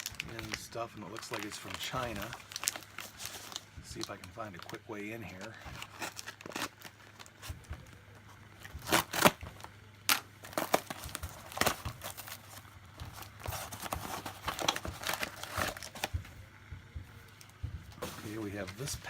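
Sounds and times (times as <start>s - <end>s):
wrapping ripping: 0.0s - 7.6s, 8.8s - 16.2s
package wrapping crinkling: 0.0s - 7.8s, 8.5s - 16.2s.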